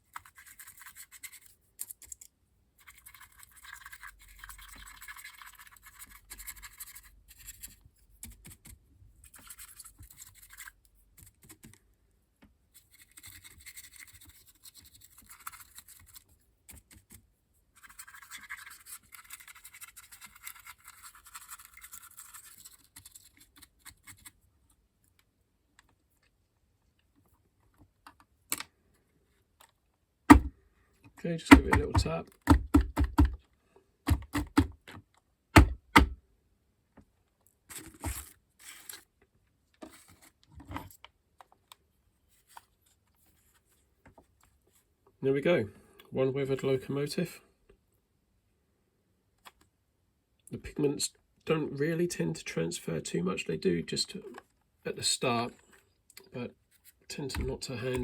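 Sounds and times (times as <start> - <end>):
brush scratchy rubbing: 17.8 - 23.4.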